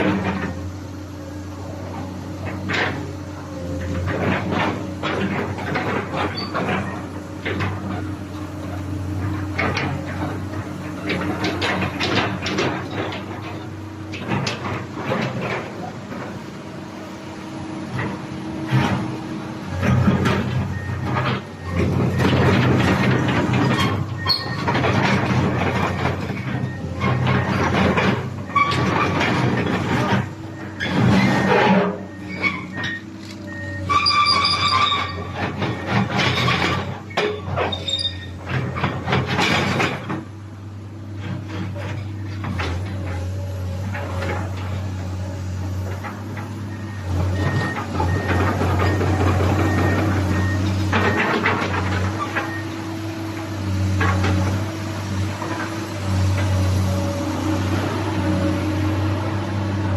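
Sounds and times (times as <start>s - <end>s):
excavator diesel engine: 0.0s - 59.9s
mechanical rattling and clanking: 2.4s - 16.5s, 19.7s - 40.4s, 45.7s - 52.6s.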